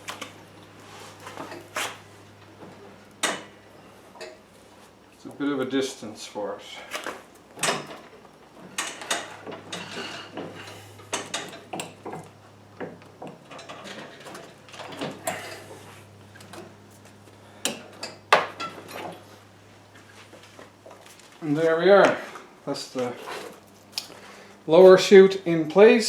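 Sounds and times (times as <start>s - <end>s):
clicks knocks and rattles of chute: 7.6s - 15.7s.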